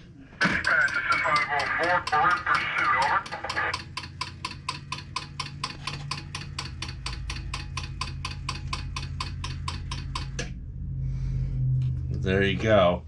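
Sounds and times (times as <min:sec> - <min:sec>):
low electrical hum: 0:00.0 - 0:13.0
rapid mechanical clicking: 0:00.4 - 0:10.5.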